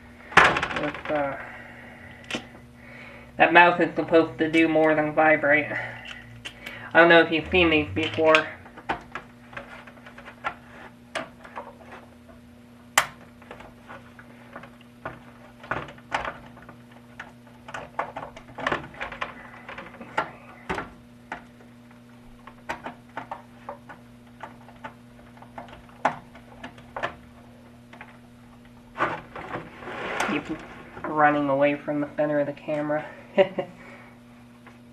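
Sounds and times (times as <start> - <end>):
faint low hum: 0.7 - 10.6.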